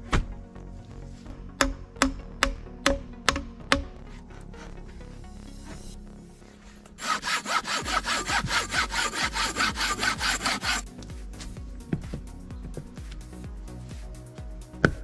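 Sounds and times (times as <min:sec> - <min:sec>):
hand saw cutting wood: 0:07.0 - 0:10.9.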